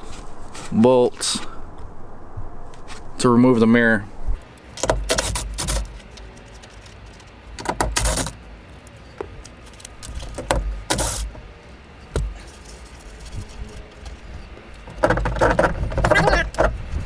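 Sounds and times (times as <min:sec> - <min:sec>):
metallic ratcheting and rattling: 0:04.4 - 0:17.0.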